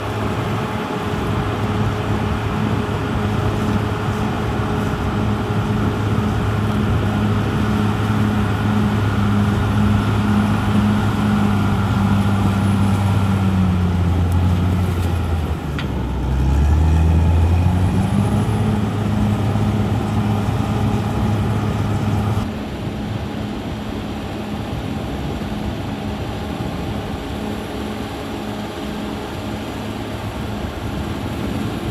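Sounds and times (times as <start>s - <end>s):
bulldozer diesel engine running: 0.0s - 31.9s.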